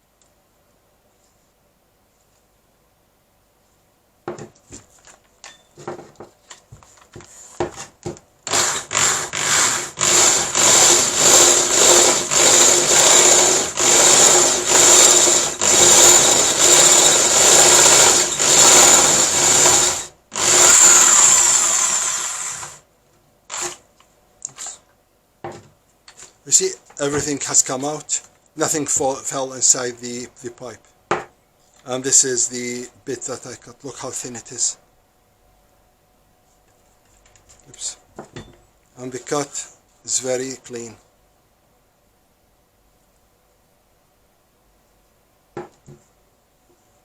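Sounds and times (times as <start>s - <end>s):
drill cutting plastic pipe: 8.4s - 22.8s, 23.5s - 23.8s.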